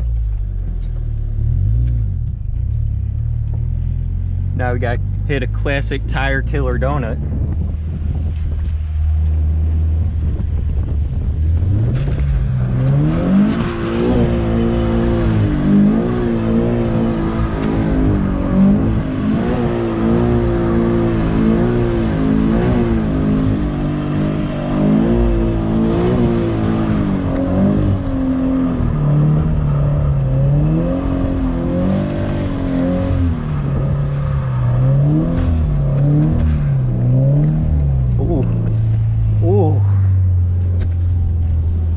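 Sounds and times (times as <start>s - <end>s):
car engine revving hard: 11.3s - 40.0s.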